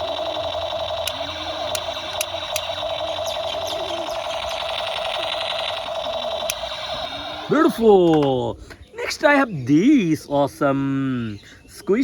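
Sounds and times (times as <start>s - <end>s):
sharp clicks: 0.0s - 7.5s
toy pistol buzzing drone: 0.0s - 7.8s.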